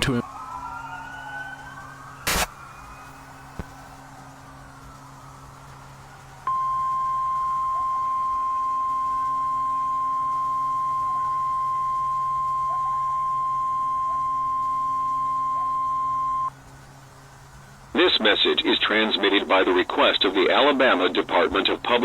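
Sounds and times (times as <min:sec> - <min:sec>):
steady electronic beep: 0:06.5 - 0:16.5.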